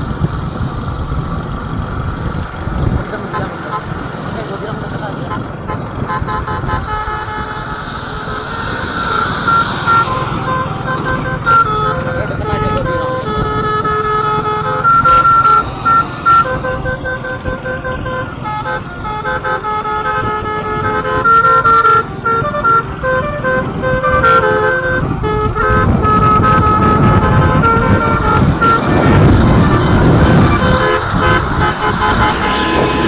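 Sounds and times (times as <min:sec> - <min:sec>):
engine rumble: 0:00.0 - 0:33.0
musical bus horn melody: 0:03.1 - 0:33.0.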